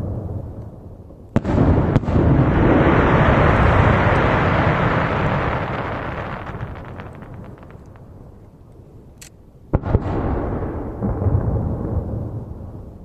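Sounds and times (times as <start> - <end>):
firework bangs: 1.3 - 8.4, 9.7 - 12.6
rolling boom: 1.4 - 8.6.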